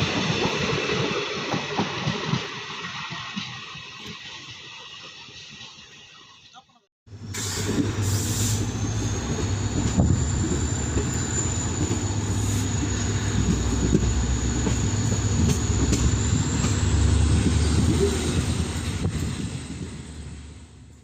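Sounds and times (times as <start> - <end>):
locomotive engine humming: 7.1 - 20.9.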